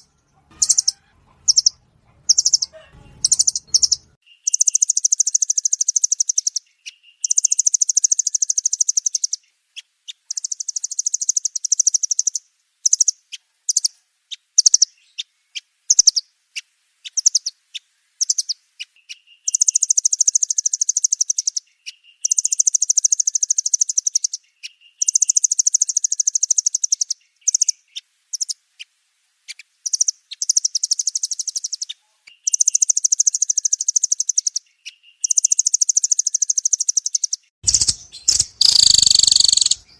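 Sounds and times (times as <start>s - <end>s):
nuthatches trilling: 0.0s - 6.6s, 35.2s - 39.9s
sharp bird chips: 0.0s - 6.6s, 7.2s - 9.3s, 22.2s - 24.4s, 29.9s - 39.9s.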